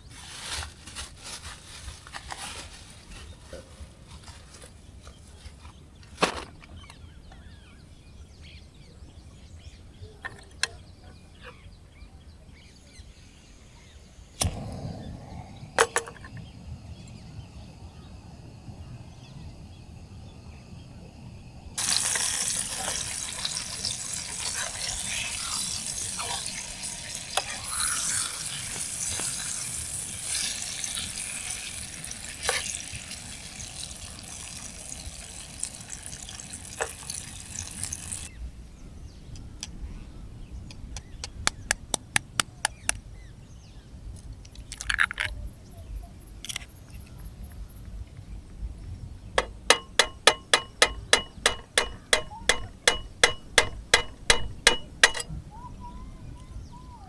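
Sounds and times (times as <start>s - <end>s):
quiet outdoor ambience: 0.0s - 57.0s
food sizzling in a hot pan: 21.8s - 38.3s
cookware clicks and knocks: 49.4s - 55.3s.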